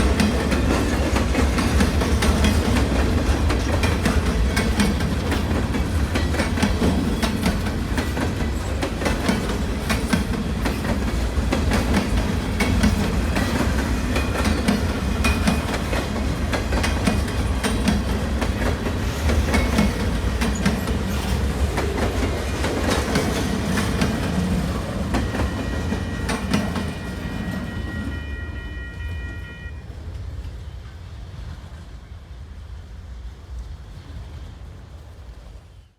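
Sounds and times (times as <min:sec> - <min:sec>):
wheels clicking over rail joints: 0:00.0 - 0:27.6
train rumbling past: 0:00.0 - 0:35.9.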